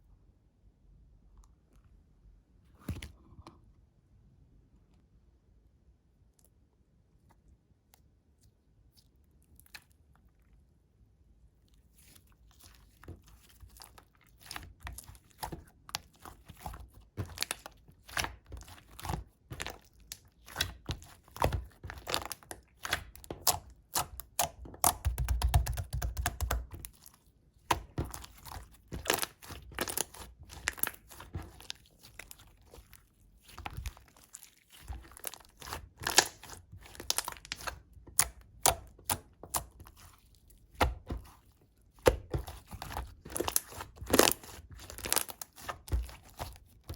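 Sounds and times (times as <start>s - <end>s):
slime clicking and popping: 17.2s - 26.8s, 27.7s - 32.4s, 34.8s - 39.9s.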